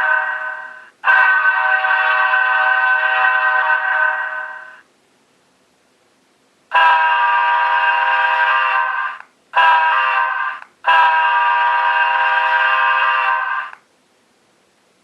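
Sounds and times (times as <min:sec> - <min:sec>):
locomotive air horn blasts: 0:00.0 - 0:04.8, 0:06.7 - 0:13.8.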